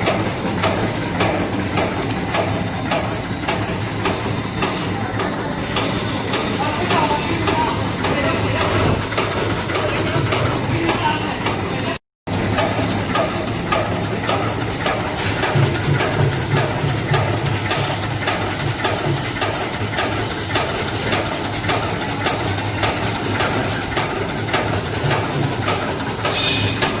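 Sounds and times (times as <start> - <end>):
thin high whine: 0.0 - 11.4, 25.9 - 27.0
machinery hum: 0.0 - 27.0.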